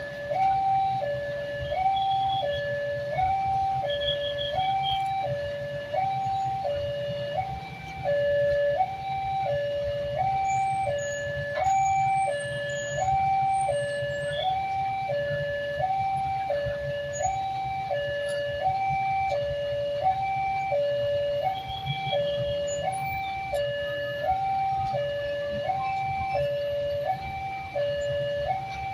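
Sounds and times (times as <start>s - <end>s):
two-tone warning siren: 0.0s - 28.9s.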